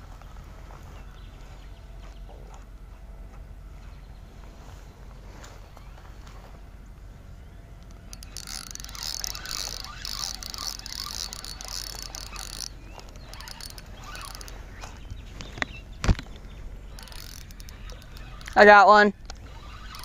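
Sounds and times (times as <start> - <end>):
fishing reel whirring rattle: 7.5 - 15.0, 16.4 - 20.0.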